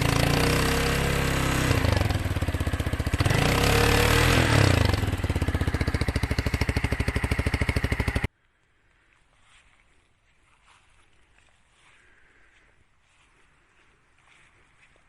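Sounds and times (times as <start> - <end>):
motorcycle engine revving: 0.0 - 8.3.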